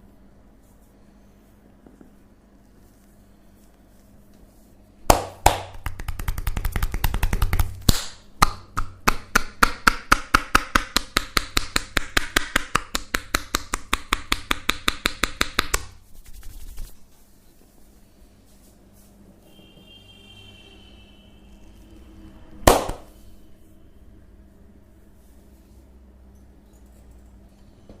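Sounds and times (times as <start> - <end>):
hands slapping body in massage: 5.1 - 17.0, 22.7 - 23.1.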